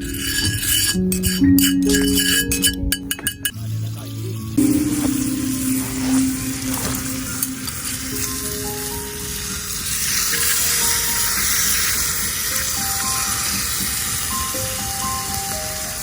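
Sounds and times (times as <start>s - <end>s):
background music with simple melody: 0.0s - 16.0s
steak sizzling in a pan: 4.1s - 16.0s.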